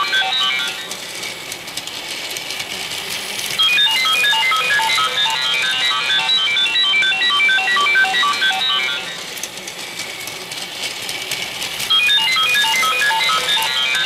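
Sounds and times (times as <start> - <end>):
electronic chime melody: 3.6 - 9.2, 11.9 - 14.0.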